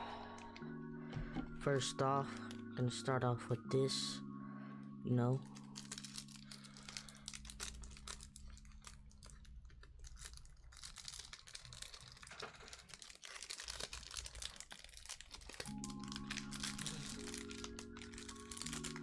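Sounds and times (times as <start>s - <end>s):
low sustained music tones: 0.0s - 10.4s, 15.0s - 19.0s
wrapper crinkling and tearing: 5.4s - 19.0s.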